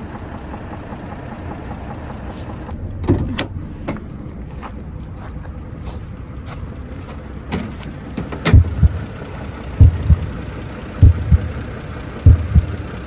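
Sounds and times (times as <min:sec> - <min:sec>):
car engine idling: 0:00.0 - 0:13.0
loud low engine thumps: 0:07.5 - 0:13.0.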